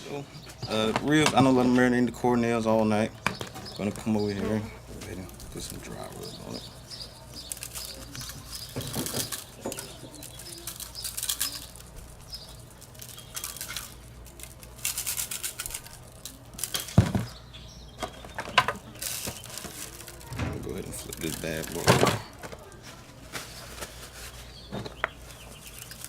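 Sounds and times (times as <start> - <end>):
spice shaker rattling: 5.3 - 17.0, 25.3 - 26.0.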